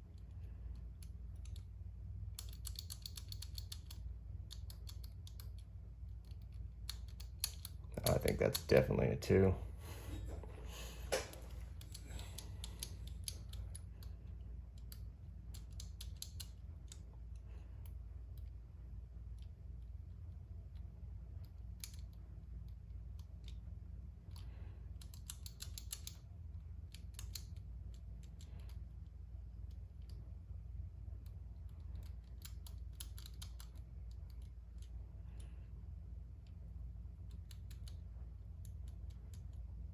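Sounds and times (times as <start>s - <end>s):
padlock wheels clicking: 2.4s - 8.7s, 14.7s - 17.0s, 24.3s - 26.2s, 31.8s - 34.8s.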